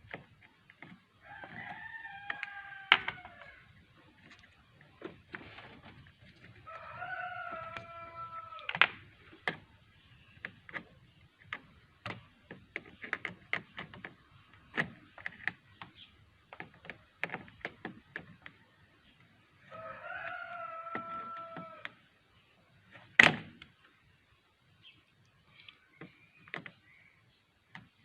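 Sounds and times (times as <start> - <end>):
rooster crowing: 1.2 - 3.6, 6.6 - 8.8, 19.7 - 22.0.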